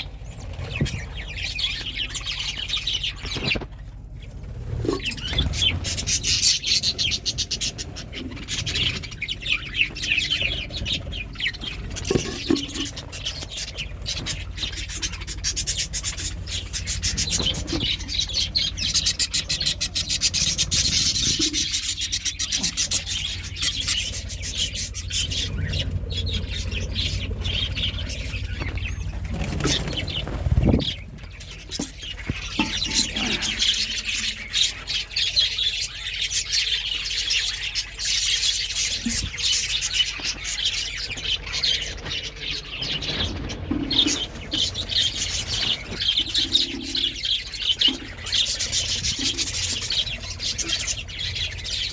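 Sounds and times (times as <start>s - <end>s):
budgerigars chattering and chirping: 0.0s - 51.9s
steady low hum: 3.9s - 35.0s
wing flapping: 26.6s - 31.2s.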